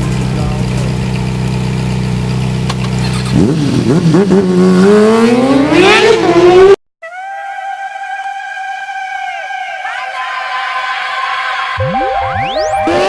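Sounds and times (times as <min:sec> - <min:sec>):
vehicle engine revving: 0:00.0 - 0:06.8
steady high tone: 0:07.0 - 0:13.0.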